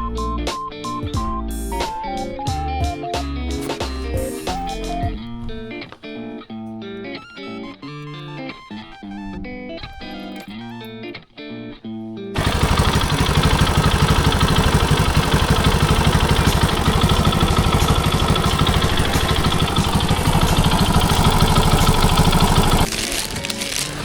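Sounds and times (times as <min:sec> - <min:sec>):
motorcycle engine idling: 0:12.4 - 0:24.0.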